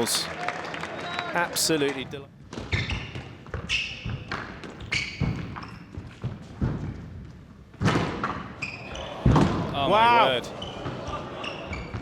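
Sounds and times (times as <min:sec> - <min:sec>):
shoes squeaking on court floor: 0:02.5 - 0:07.0, 0:08.2 - 0:09.3, 0:10.2 - 0:12.0
squash ball thuds: 0:02.5 - 0:08.6.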